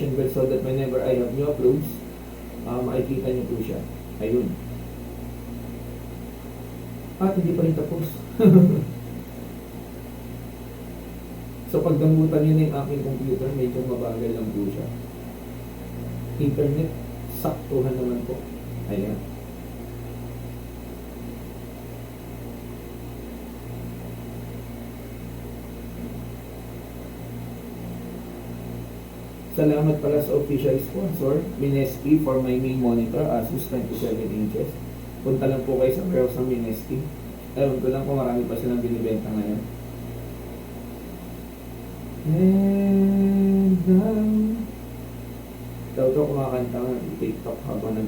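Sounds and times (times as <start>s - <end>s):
steady low hum: 0.0s - 48.0s
man humming: 42.2s - 44.7s.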